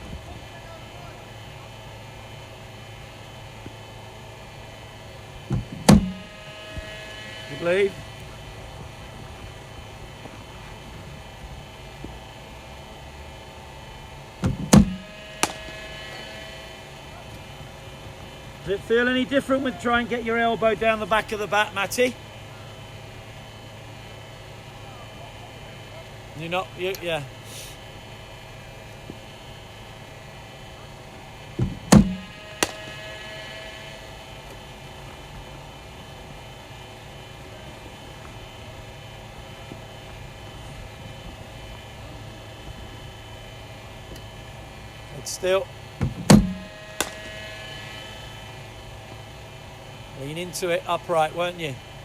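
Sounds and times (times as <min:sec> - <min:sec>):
steady background hum: 0:00.0 - 0:52.0
bowling machine thud: 0:05.5 - 0:06.9, 0:14.4 - 0:15.7, 0:31.6 - 0:33.0, 0:46.0 - 0:47.4
ball crack: 0:14.8 - 0:15.8, 0:31.9 - 0:33.0, 0:46.4 - 0:47.5
cricket ball knocks: 0:46.3 - 0:47.4.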